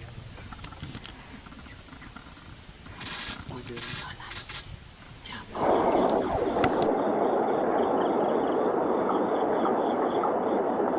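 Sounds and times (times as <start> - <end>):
insects trilling: 0.0 - 10.9
loud even hiss: 2.5 - 6.9.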